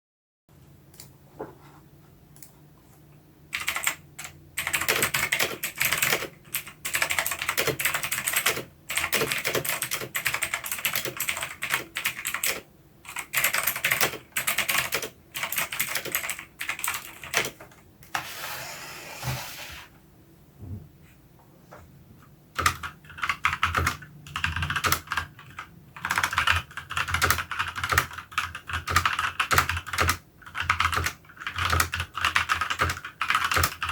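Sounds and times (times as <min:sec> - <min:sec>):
mechanical keyboard typing: 0:03.5 - 0:17.8, 0:22.6 - 0:33.9.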